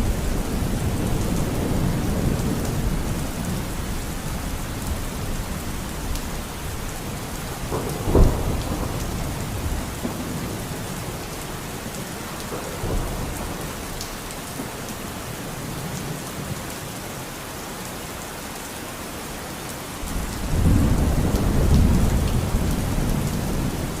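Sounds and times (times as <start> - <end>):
low thunder rumble: 0.0 - 11.6, 20.0 - 24.0
steady rain falling: 0.0 - 24.0
raindrop ticks: 12.0 - 15.0.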